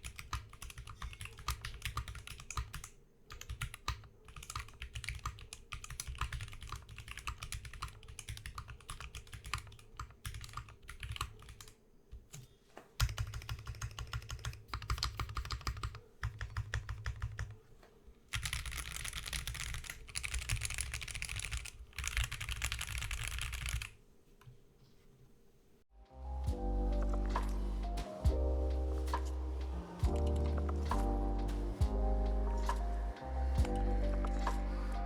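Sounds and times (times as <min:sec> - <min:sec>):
mechanical keyboard typing: 0:00.0 - 0:12.4, 0:13.0 - 0:17.6, 0:18.3 - 0:24.0, 0:30.0 - 0:31.4.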